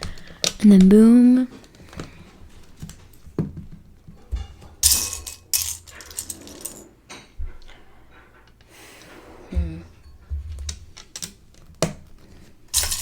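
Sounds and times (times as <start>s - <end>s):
plastic bricks clattering: 4.8s - 6.8s, 12.7s - 13.0s
plastic bricks clicking: 12.8s - 13.0s.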